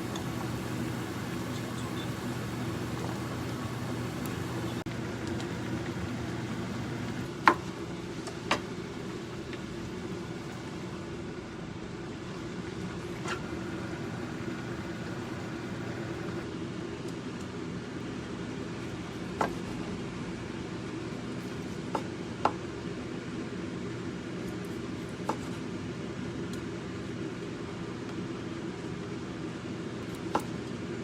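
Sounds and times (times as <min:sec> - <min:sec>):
machine motor hum: 0:00.0 - 0:07.3, 0:12.5 - 0:16.5.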